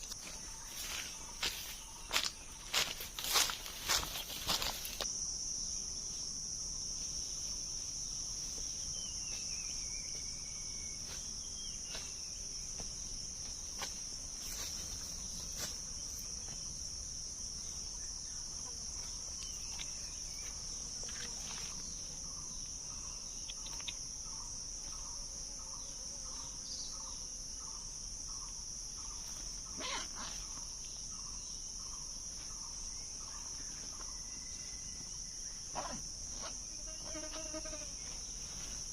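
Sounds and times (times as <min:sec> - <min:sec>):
high-pitched insect drone: 0:00.0 - 0:38.9
faint bird calls: 0:29.0 - 0:30.7.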